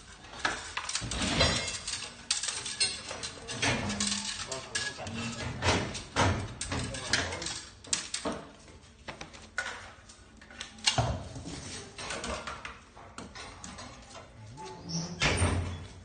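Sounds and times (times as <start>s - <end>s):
metal parts knocking and clattering: 0.0s - 8.5s.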